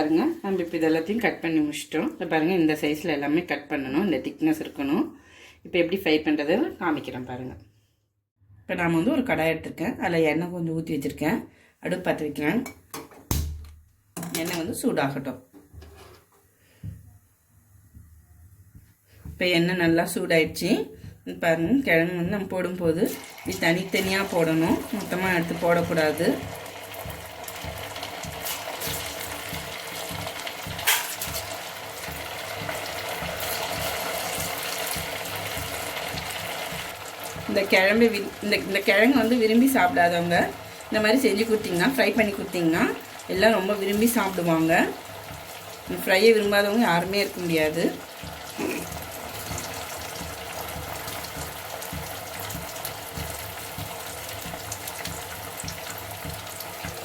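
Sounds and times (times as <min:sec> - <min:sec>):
food sizzling in hot oil: 0:00.0 - 0:03.1, 0:15.3 - 0:57.0.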